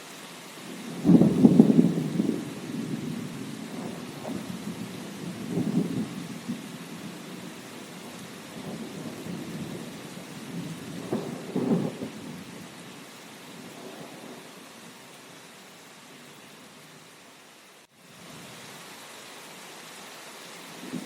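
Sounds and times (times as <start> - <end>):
rain hiss: 0.0 - 21.0
low rolling thunder: 0.7 - 12.7, 13.6 - 14.5.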